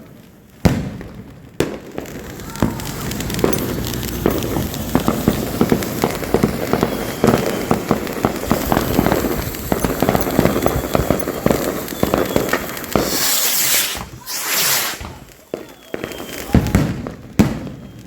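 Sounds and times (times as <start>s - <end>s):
fireworks popping and crackling: 0.0s - 18.0s
hissing rush: 2.2s - 6.3s, 7.6s - 15.7s.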